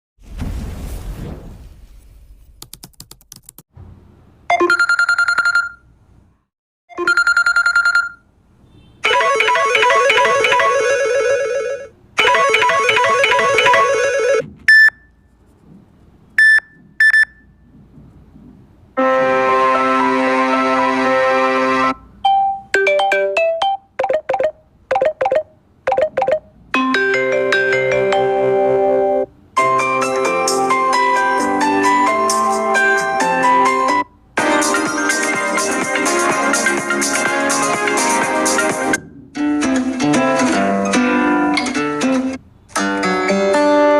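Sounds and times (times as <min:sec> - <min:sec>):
short phone rings: 0:06.9 - 0:08.2
plucked guitar-like ringtone melody: 0:09.1 - 0:14.4
sustained chord ringtone melody: 0:09.1 - 0:14.4, 0:26.8 - 0:33.1.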